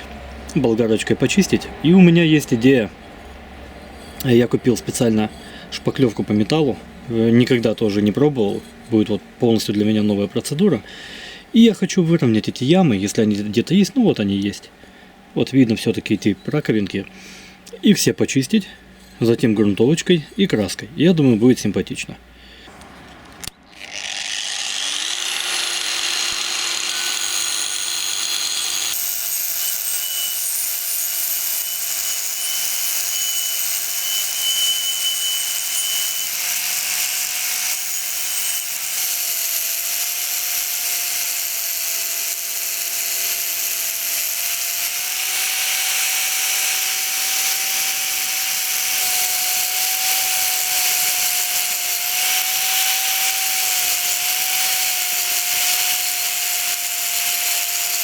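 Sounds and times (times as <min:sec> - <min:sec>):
angle grinder with wire brush: 0:00.0 - 0:10.6, 0:23.7 - 0:58.0.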